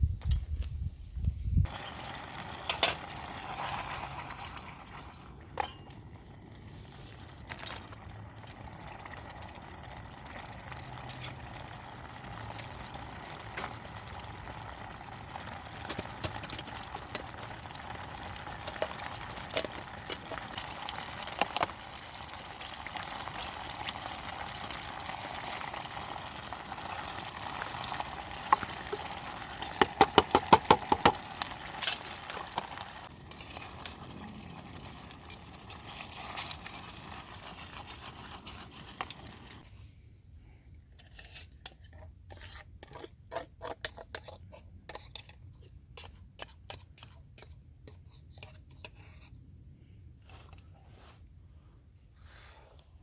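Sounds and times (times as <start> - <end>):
food bubbling in a pan: 1.6 - 39.6.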